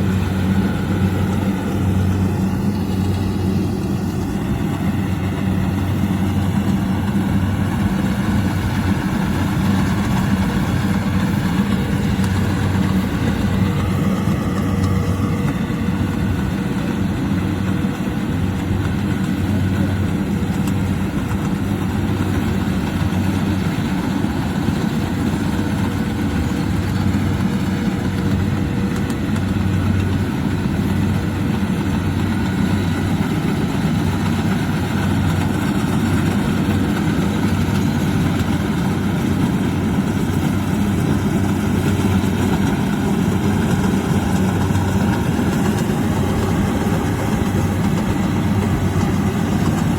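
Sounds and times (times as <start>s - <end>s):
combine harvester engine drone: 0.0s - 49.9s
machinery noise: 0.0s - 49.9s.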